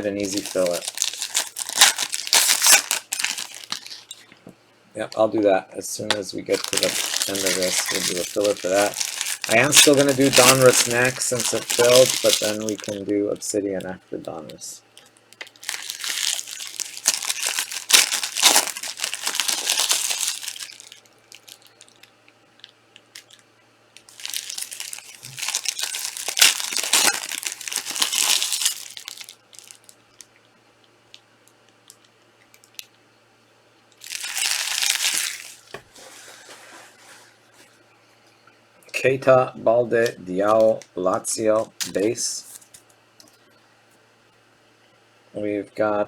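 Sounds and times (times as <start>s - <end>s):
card pack wrapping crinkling: 0.0s - 4.3s, 6.5s - 23.4s, 24.0s - 30.0s, 34.0s - 35.9s.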